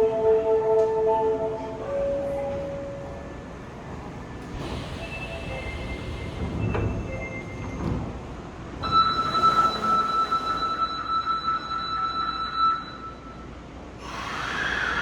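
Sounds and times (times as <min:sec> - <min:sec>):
low train rumble: 0:00.0 - 0:15.0
subway train wheel squeal: 0:01.8 - 0:08.2, 0:08.8 - 0:15.0
high electronic warning tone: 0:08.8 - 0:13.4.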